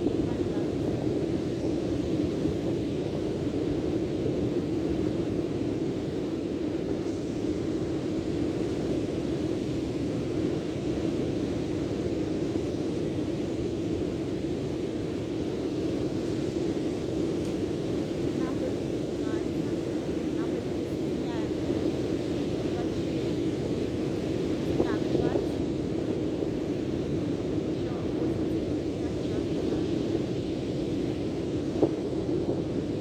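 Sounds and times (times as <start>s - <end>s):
steady rushing outdoor noise: 11.8s - 33.0s.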